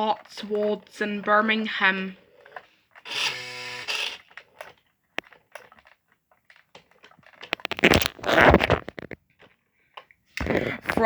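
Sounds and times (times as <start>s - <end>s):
small clicks and crackles: 0.0s - 11.0s
rustling handling noise: 4.2s - 11.0s.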